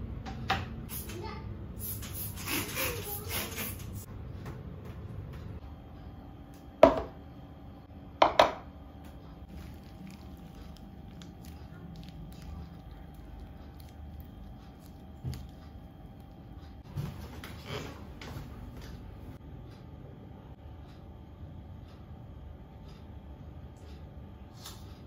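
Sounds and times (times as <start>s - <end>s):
faint steady hum: 4.0s - 25.0s
hard objects knocking: 8.2s - 8.6s.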